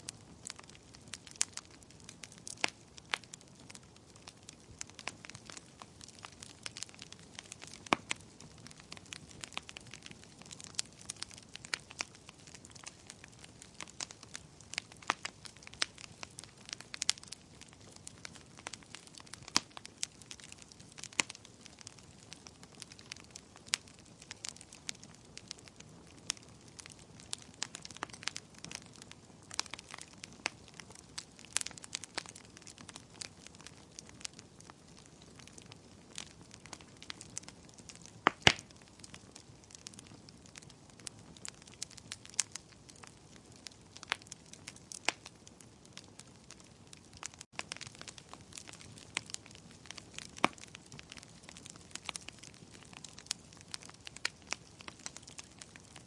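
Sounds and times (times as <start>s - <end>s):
soft hiss of burning: 0.0s - 56.0s
wood fire crackling: 0.0s - 56.0s
sharp pops of fire: 33.6s - 39.2s, 46.5s - 56.0s.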